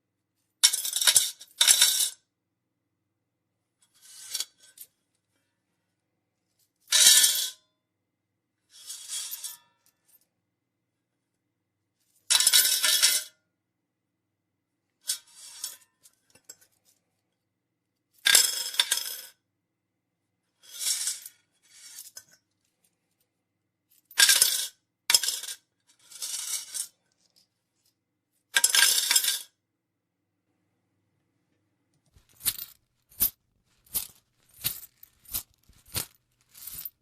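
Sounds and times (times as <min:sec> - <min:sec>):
coins dropping and jingling: 0:32.1 - 0:37.0.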